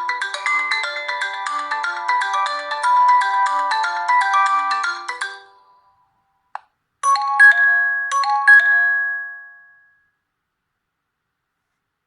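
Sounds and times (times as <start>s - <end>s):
bright melodic ringtone notes: 0.0s - 6.1s, 7.0s - 10.1s.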